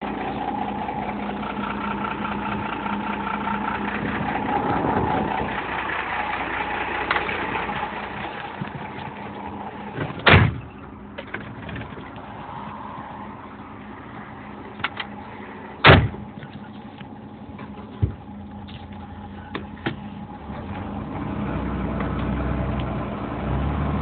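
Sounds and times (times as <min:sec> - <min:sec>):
truck diesel engine running: 0:00.0 - 0:24.0
loud thump: 0:10.0 - 0:10.8, 0:15.8 - 0:16.2.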